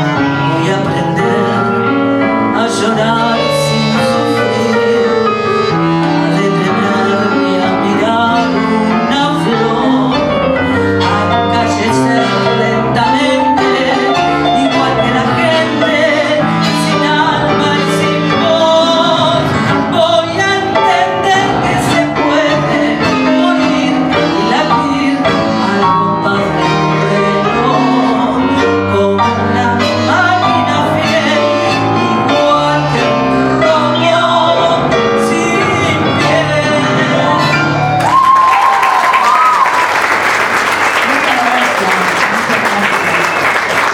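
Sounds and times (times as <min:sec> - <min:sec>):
woman singing a tango: 0:00.0 - 0:37.9
piano guitar and bandoneon: 0:00.0 - 0:39.6
audience applause: 0:37.9 - 0:43.9.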